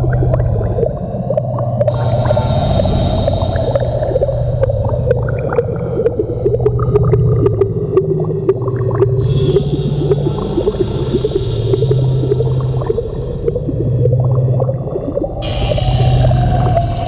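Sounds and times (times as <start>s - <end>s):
low pulsing drone: 0.0s - 17.0s
high hiss: 1.9s - 5.3s, 9.2s - 13.5s, 15.4s - 17.0s.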